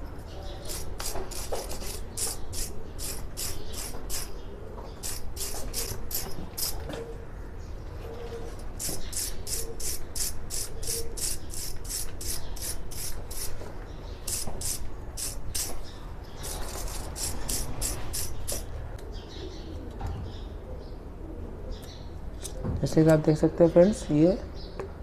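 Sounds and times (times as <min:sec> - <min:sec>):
wire brush scrubbing metal: 0:00.6 - 0:04.3, 0:05.0 - 0:06.8, 0:08.8 - 0:13.6, 0:14.3 - 0:15.7, 0:16.4 - 0:18.7.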